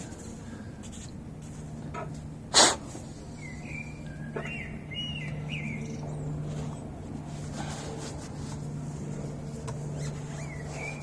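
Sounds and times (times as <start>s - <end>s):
bird chirping: 3.3s - 6.4s, 10.3s - 11.0s.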